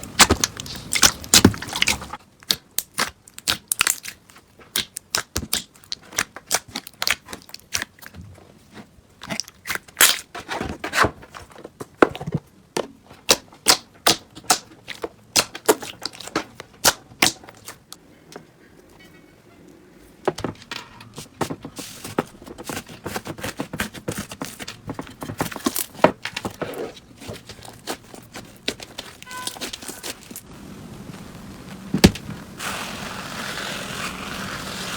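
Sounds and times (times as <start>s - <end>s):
slime popping and crackling: 0.0s - 8.1s, 9.2s - 10.2s, 13.3s - 18.0s.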